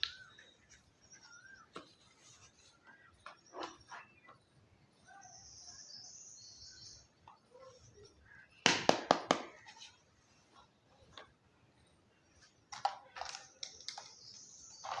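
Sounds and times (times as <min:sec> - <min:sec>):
sharp plastic clacks: 0:12.7 - 0:15.0.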